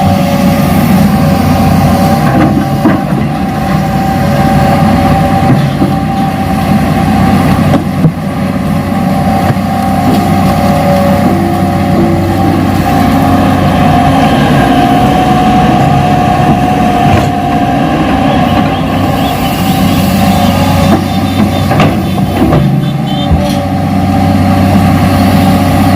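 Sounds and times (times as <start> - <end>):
held whine: 8.7 - 25.7.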